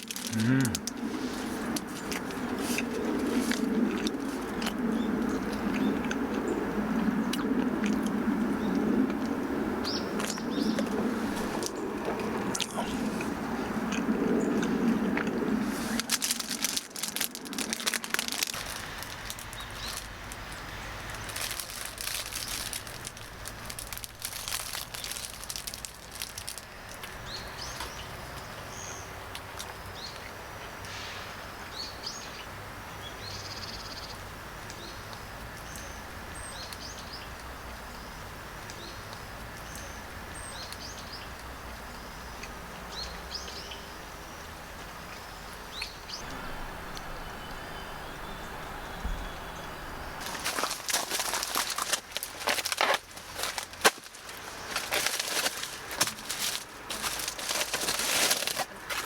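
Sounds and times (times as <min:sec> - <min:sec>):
crackling and clicking: 0:00.0 - 0:27.2, 0:50.2 - 0:59.0
small birds chirping: 0:00.0 - 0:30.4, 0:31.7 - 0:59.0
steady low hum: 0:00.3 - 0:16.4, 0:34.2 - 0:59.0.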